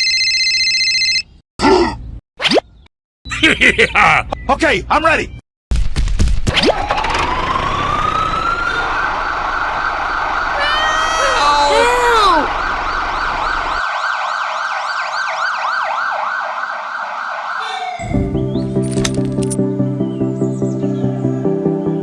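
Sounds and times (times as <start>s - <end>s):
siren wailing and yelping: 6.7s - 18.2s.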